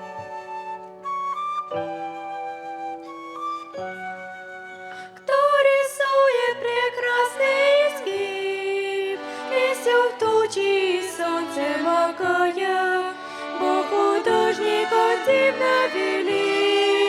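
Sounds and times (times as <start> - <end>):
violin playing hymn melody: 0.0 - 2.3, 5.0 - 17.0
people singing a hymn: 5.3 - 17.0.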